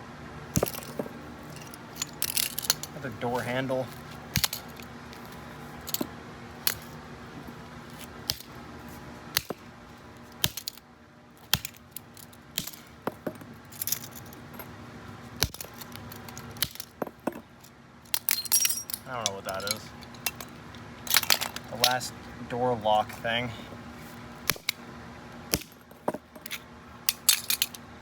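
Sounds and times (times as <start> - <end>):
small metal parts clinking: 0.5 - 8.6, 10.2 - 14.8, 15.4 - 22.1, 25.5 - 27.9.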